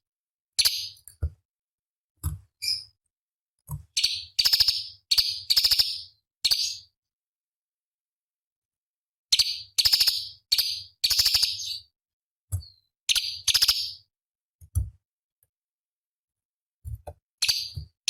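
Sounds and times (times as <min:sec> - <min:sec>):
bird harsh chattering song: 0:04.0 - 0:06.9, 0:09.3 - 0:11.9, 0:13.1 - 0:14.1.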